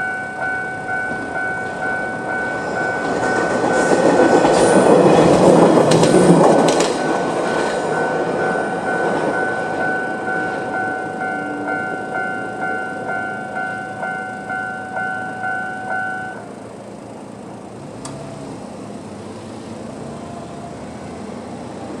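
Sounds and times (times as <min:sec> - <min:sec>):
level crossing bell dinging: 0:00.0 - 0:16.6
train passing: 0:00.0 - 0:22.0.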